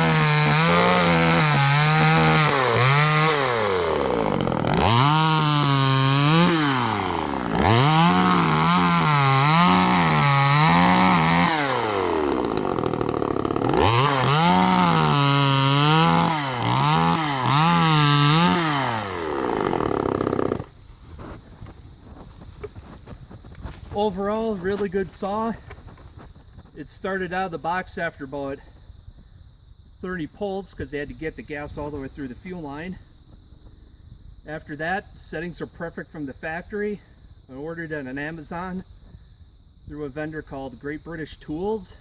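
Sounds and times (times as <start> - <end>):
chainsaw revving and cutting: 0.0 - 20.8.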